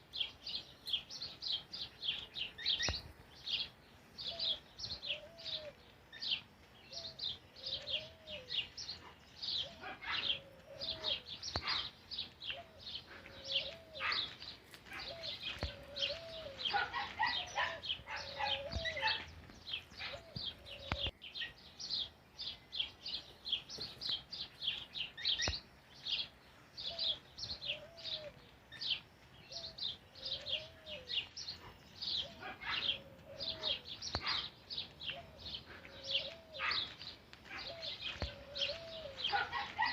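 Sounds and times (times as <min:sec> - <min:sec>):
birds chirping: 0:00.0 - 0:39.9
rising and falling bird call: 0:12.5 - 0:19.3, 0:20.0 - 0:21.2, 0:24.7 - 0:39.9.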